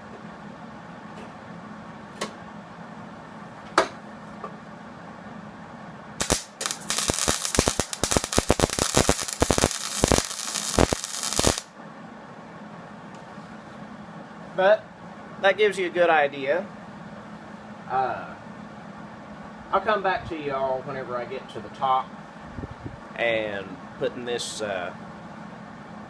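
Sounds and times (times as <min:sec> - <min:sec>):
welding arc crackling: 0:06.2 - 0:11.7.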